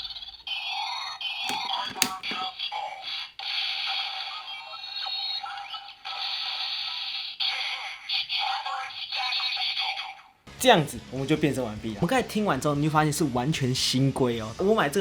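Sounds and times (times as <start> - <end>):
toy voice lines: 2.6 - 10.4.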